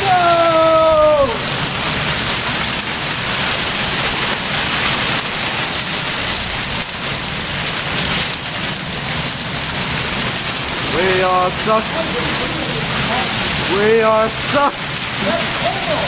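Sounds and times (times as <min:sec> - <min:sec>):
hailstones ticking: 0:00.0 - 0:16.0
heavy rain and hail: 0:00.0 - 0:16.0.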